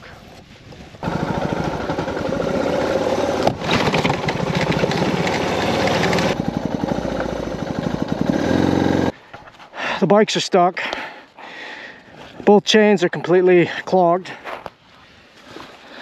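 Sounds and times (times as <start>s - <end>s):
motorcycle engine chugging: 1.0s - 9.1s.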